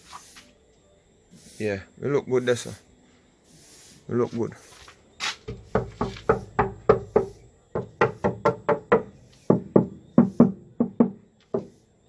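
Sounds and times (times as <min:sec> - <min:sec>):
sharp knocks on wooden box: 0:05.4 - 0:11.7.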